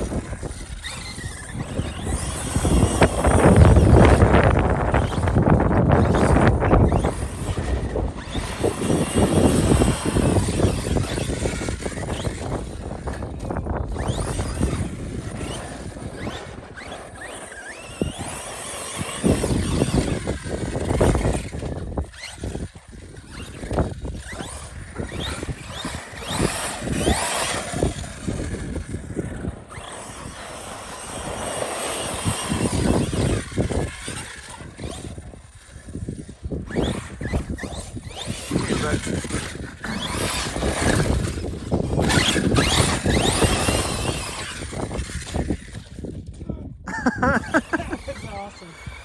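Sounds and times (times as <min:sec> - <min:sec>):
tyres on gravel: 0:00.0 - 0:46.4
electric rc car motor whining: 0:00.0 - 0:49.0.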